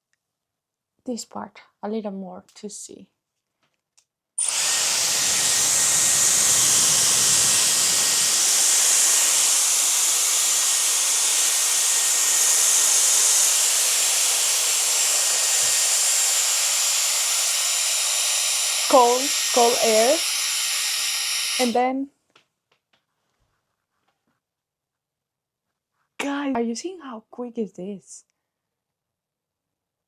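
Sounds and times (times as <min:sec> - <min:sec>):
hair styler blowing air: 0:04.4 - 0:21.8.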